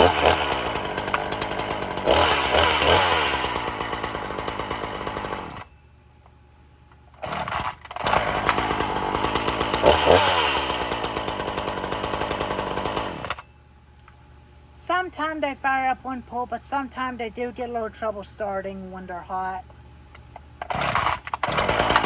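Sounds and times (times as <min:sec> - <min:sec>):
chainsaw engine revving: 0:00.0 - 0:05.6, 0:07.2 - 0:13.4, 0:20.6 - 0:22.0.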